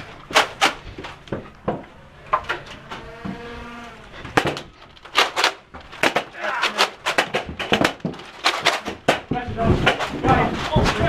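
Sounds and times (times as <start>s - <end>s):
sharp clacks and knocks: 4.3s - 11.0s.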